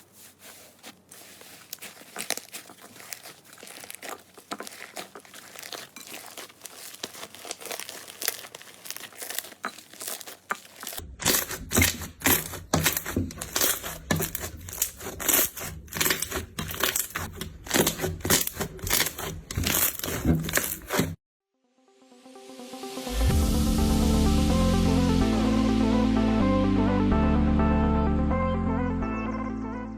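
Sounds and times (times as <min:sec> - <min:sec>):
slime squelching: 0:00.0 - 0:21.2
slime crackling and popping: 0:01.2 - 0:21.2.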